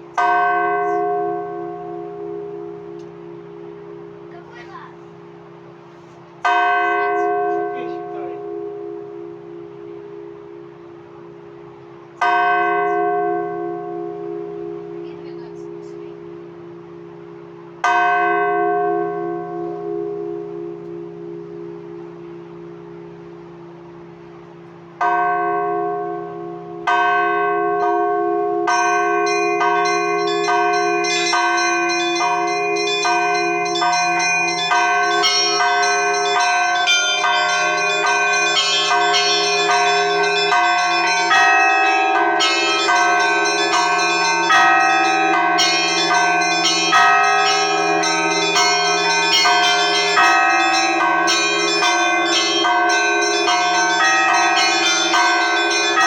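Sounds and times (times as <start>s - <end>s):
church bells pealing: 0.0s - 5.8s, 6.4s - 56.0s
deep bell hum: 28.0s - 56.0s.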